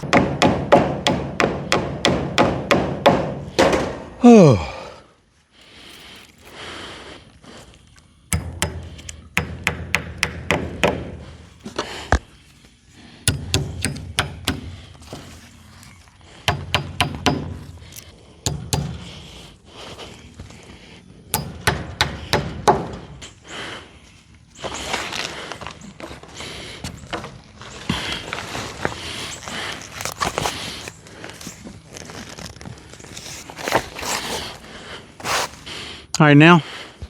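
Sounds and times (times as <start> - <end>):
hammer tacking small nails: 0.0 - 4.0, 8.3 - 12.3, 13.2 - 19.6, 21.3 - 23.2.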